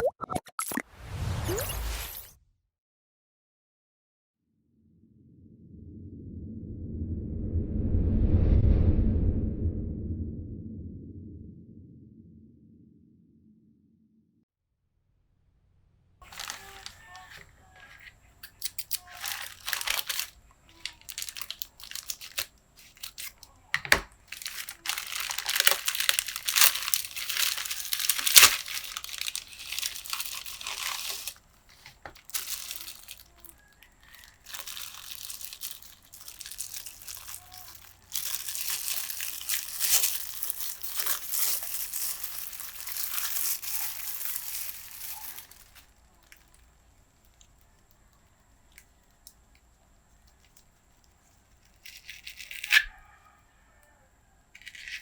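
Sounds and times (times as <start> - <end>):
packaging crinkling and tearing: 16.2 - 47.9, 50.3 - 52.9, 54.6 - 55.0.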